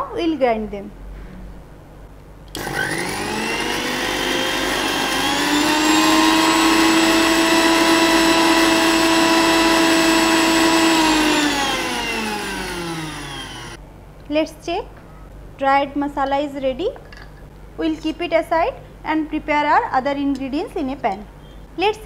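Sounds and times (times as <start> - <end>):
mixer grinder motor whining: 2.5 - 13.8.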